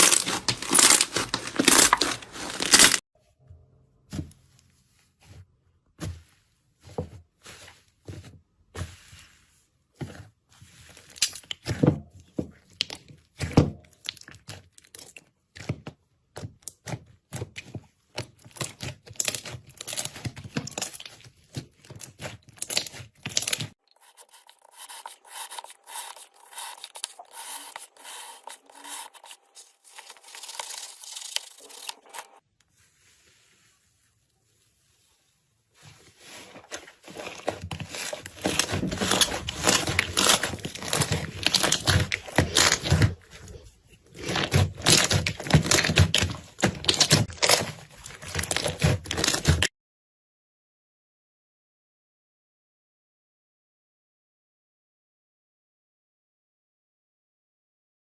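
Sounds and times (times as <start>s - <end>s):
slime crackling and popping: 0.0s - 3.0s.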